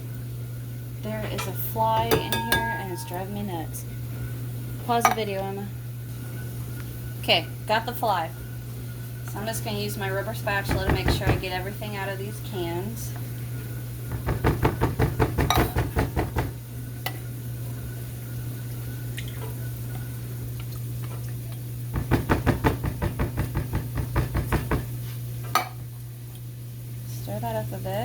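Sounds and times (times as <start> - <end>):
steady low hum: 0.0 - 20.7.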